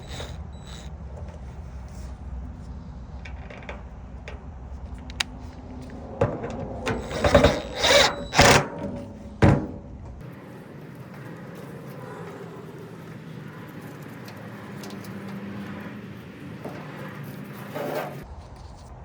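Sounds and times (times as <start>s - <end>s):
loud scraping and rubbing: 0.0s - 0.9s, 6.6s - 8.6s, 16.6s - 18.3s.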